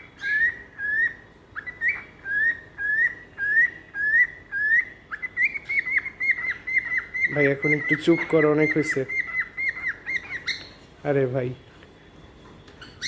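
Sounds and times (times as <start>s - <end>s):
cockatiel whistling: 0.0s - 10.8s.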